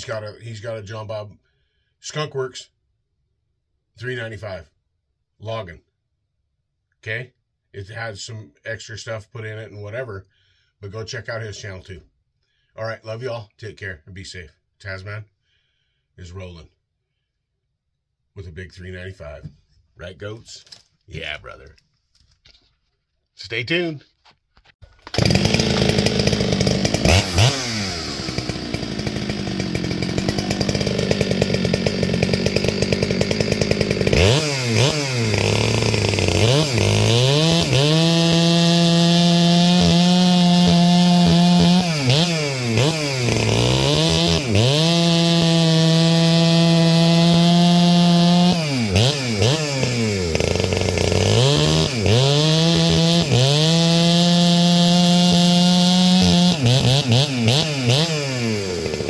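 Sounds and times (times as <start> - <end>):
chainsaw engine revving: 25.0 - 59.0.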